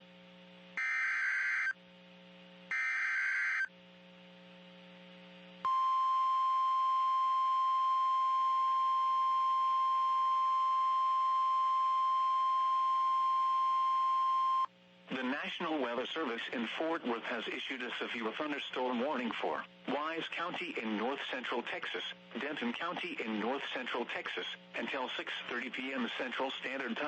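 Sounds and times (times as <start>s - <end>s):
low receiver hum: 0.0s - 27.0s
steady warning alarm tone: 0.8s - 1.8s, 2.7s - 3.7s.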